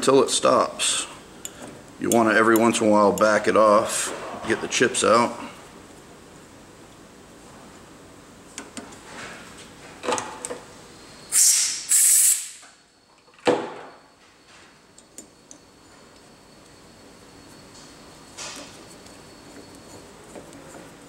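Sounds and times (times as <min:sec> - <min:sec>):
compressed air hissing blasts: 0:11.3 - 0:12.6.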